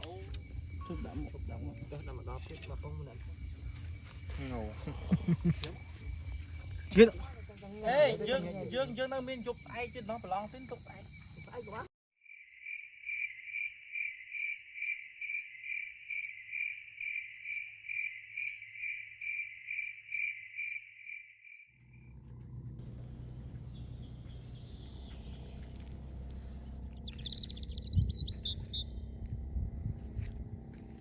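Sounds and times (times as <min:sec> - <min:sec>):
insect chirping: 0:00.0 - 0:31.0
outdoor rumble: 0:21.8 - 0:31.0.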